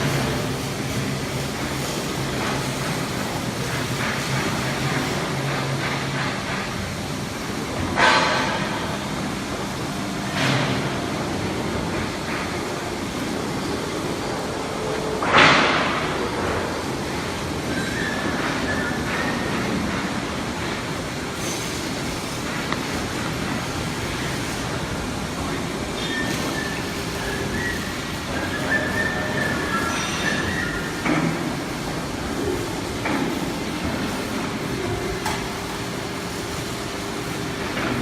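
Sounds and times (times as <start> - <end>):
plate rolling machine running: 0.0 - 38.0
high metallic squeals: 26.0 - 31.0.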